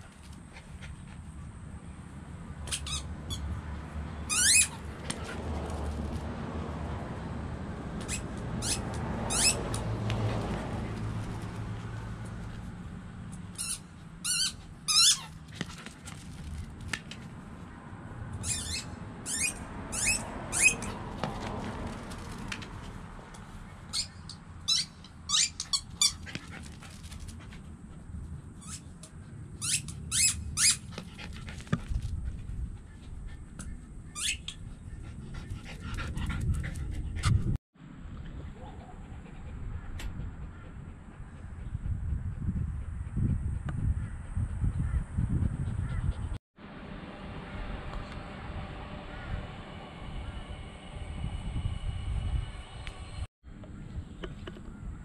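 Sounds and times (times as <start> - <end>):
high-pitched squeaks: 2.6 - 3.6, 4.3 - 5.9, 8.0 - 9.9, 13.5 - 16.3, 18.4 - 22.5, 23.9 - 26.4, 29.6 - 31.0, 34.2 - 34.6.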